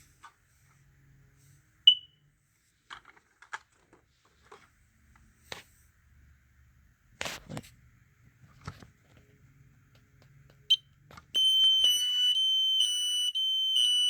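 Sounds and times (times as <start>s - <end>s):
smoke alarm chirp: 1.9s - 2.2s, 10.7s - 14.0s.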